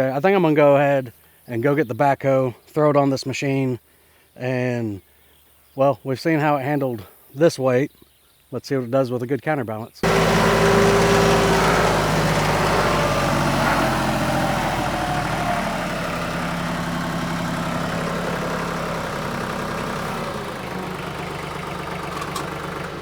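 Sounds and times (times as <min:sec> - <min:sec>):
tractor diesel engine running: 0:10.0 - 0:23.0.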